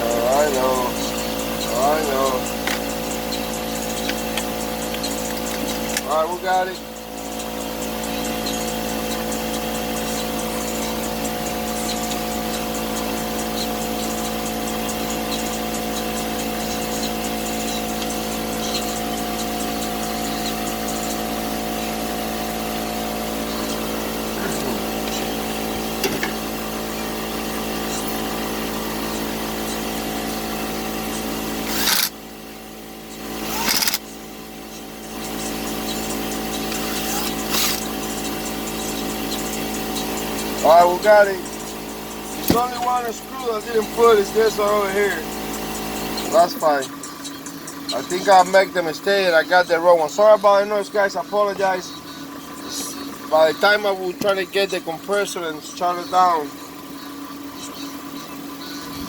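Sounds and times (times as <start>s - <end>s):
air compressor humming: 0.0s - 59.0s.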